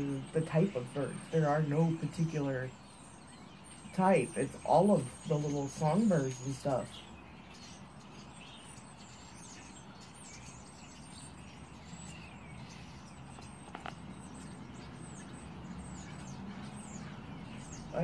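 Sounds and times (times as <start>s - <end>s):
songbirds chirping: 0.0s - 18.0s.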